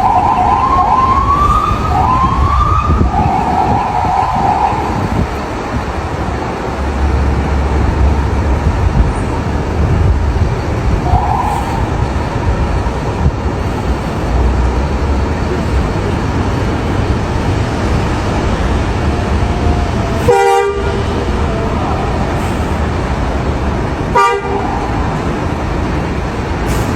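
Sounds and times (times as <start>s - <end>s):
bus engine rumble: 0.0s - 26.9s
road noise: 0.0s - 26.9s
bus horn playing a melody: 20.2s - 21.3s, 24.1s - 24.7s.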